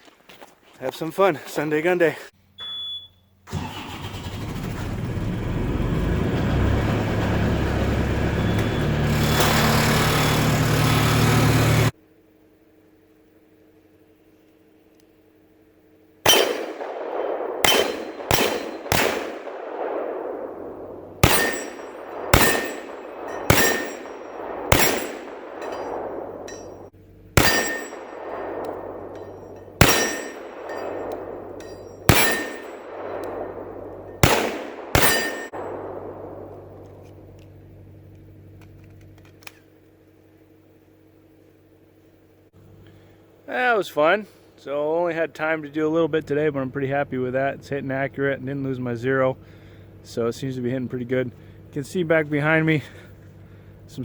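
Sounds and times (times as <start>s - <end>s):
gunshots with rolling echo: 16.2s - 37.3s
steel targets ringing: 16.3s - 36.8s.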